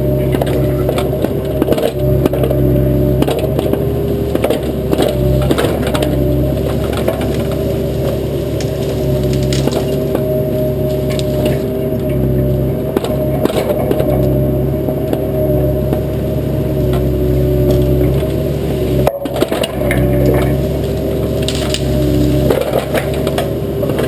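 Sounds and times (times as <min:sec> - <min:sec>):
excavator engine running: 0:00.0 - 0:24.0
brush and small trees snapping: 0:03.2 - 0:12.2, 0:16.9 - 0:24.0.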